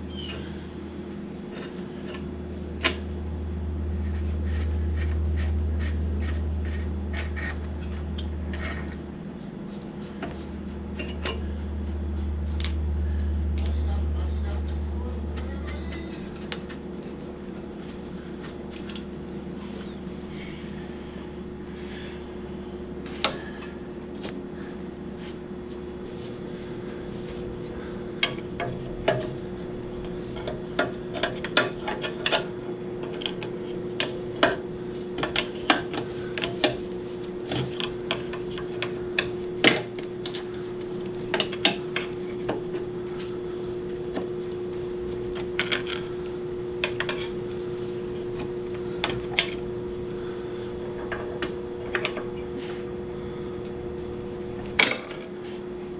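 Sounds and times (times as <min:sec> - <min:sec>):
steady hum: 0:00.0 - 0:55.9
metal parts clicking and clinking: 0:12.6 - 0:13.9.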